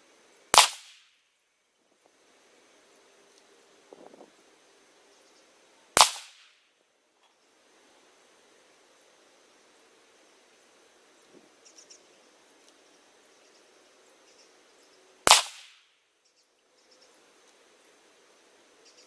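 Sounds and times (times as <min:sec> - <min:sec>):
faint ticks and chirps: 0:00.0 - 0:19.0
rifle shot: 0:00.5 - 0:01.1, 0:06.0 - 0:06.6, 0:15.3 - 0:15.8.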